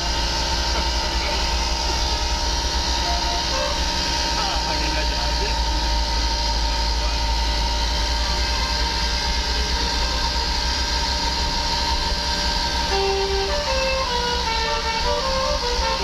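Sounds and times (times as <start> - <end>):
road noise: 0.0 - 16.0
vehicle engine rumble: 0.0 - 16.0
musical air horn melody: 1.6 - 4.4, 12.7 - 16.0.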